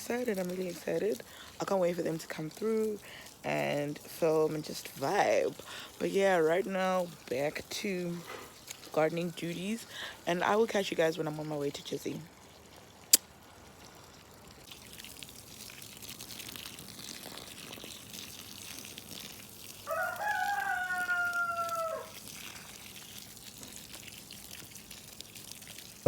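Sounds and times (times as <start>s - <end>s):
faint steady hiss: 0.0s - 15.5s
rooster crowing: 19.8s - 22.2s.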